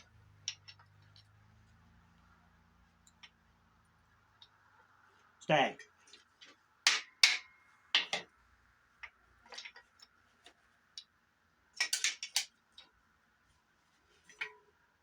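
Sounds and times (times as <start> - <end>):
metallic taps and clinks: 0.0 - 1.4.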